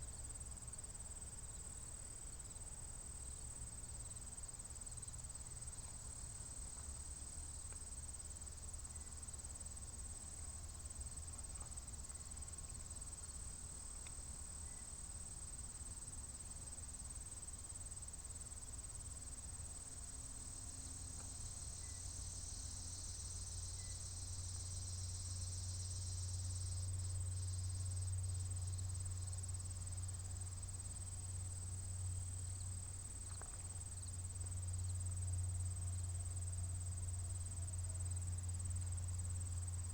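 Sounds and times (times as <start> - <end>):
insects trilling: 15.6 - 39.9.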